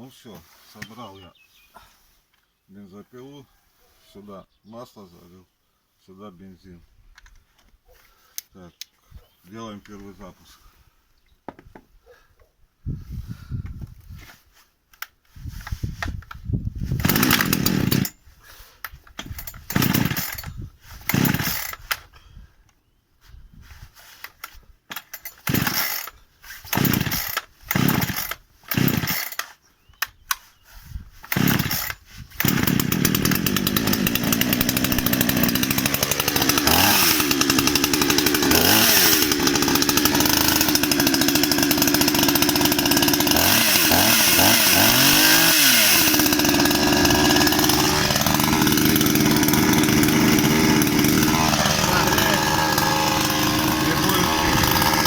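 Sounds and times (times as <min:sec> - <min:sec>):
chainsaw starter cord pulls: 0:15.0 - 0:18.2, 0:18.9 - 0:22.1, 0:24.2 - 0:30.5, 0:31.2 - 0:55.0
chainsaw engine running: 0:17.0 - 0:18.2, 0:19.4 - 0:21.9, 0:25.2 - 0:29.4, 0:31.3 - 0:55.0.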